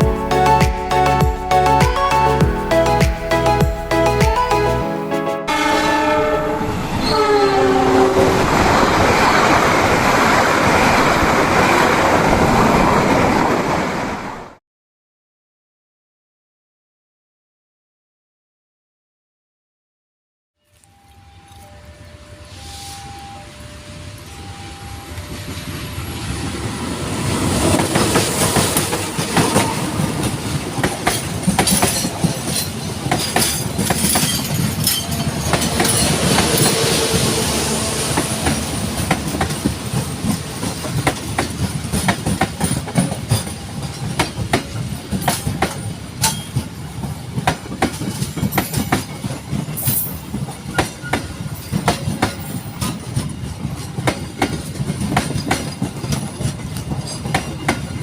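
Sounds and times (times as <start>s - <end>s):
train rumble: 22.5s - 58.0s
train wheels clattering over rails: 27.4s - 58.0s.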